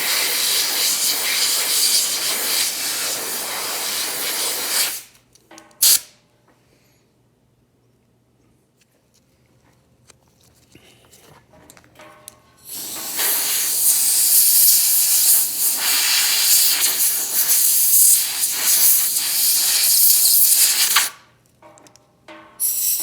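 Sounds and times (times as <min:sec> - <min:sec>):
loud steady hiss: 0:00.0 - 0:05.2, 0:05.8 - 0:06.1, 0:12.7 - 0:21.2, 0:22.6 - 0:23.0.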